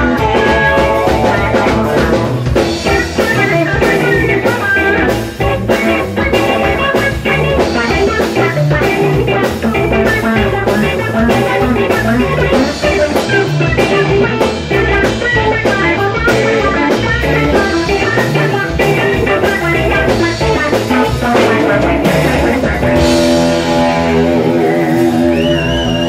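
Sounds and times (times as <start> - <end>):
rock band playing: 0.0 - 26.0
high wavering guitar note: 21.5 - 26.0.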